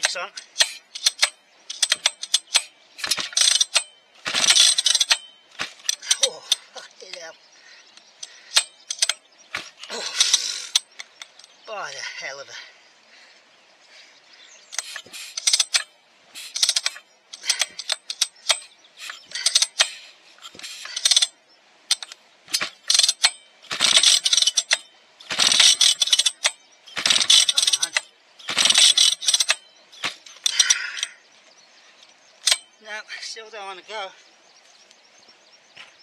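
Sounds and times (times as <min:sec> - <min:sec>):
chainsaw recoil starter pulls: 0:00.0 - 0:07.2, 0:08.2 - 0:11.6, 0:14.7 - 0:21.3, 0:21.9 - 0:31.2.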